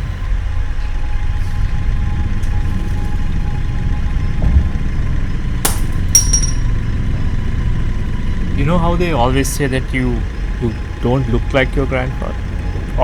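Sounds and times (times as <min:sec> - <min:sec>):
car engine idling: 0:00.0 - 0:13.0
sharp ringing clicks: 0:05.7 - 0:06.7.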